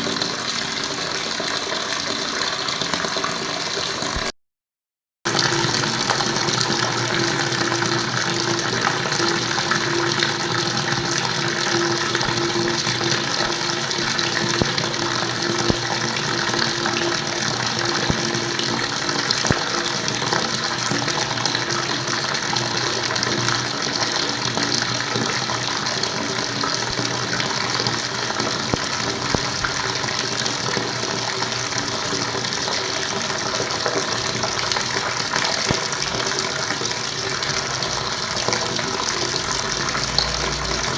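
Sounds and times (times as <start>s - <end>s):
water flowing and gushing: 5.3s - 40.9s.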